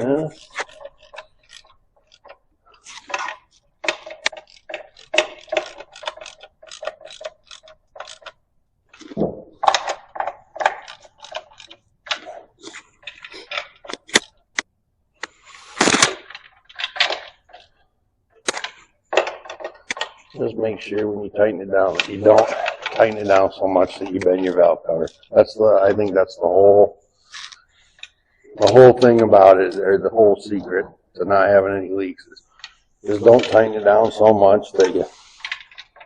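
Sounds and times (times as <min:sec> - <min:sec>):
ratchet wrench clicking: 0:00.0 - 0:08.4, 0:09.8 - 0:11.8.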